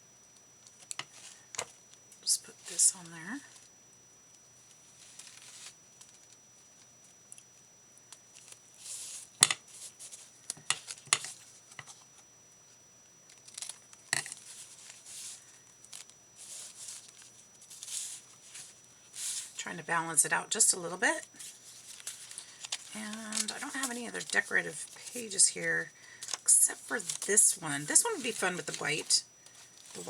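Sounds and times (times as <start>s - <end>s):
paper rustling and crinkling: 4.8s - 6.4s, 13.3s - 19.6s, 21.4s - 30.0s.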